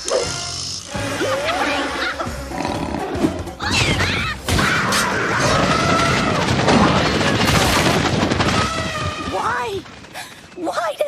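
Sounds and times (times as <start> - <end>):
cartoon music: 0.0 - 4.4.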